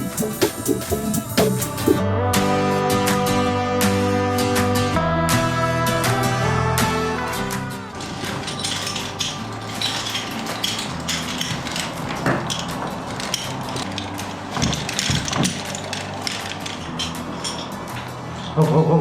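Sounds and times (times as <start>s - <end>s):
hand tools clicking and scraping: 7.9s - 18.7s.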